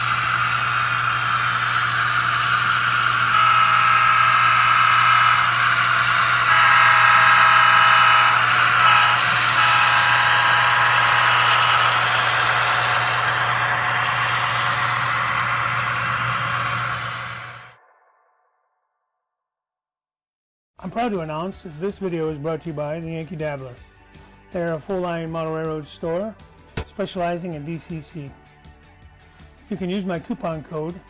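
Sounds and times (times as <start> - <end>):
diesel engine rumble: 0.0 - 17.8
locomotive horn: 6.5 - 11.3.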